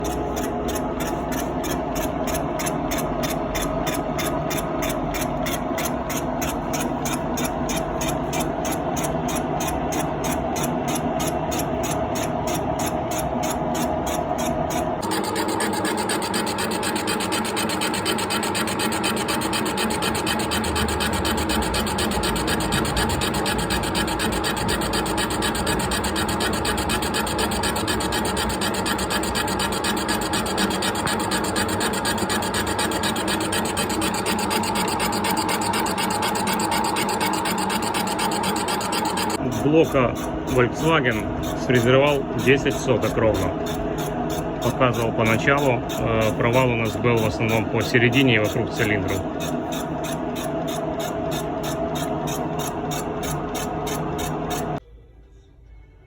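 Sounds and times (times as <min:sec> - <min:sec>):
milling machine cutting metal: 0:11.5 - 0:54.8.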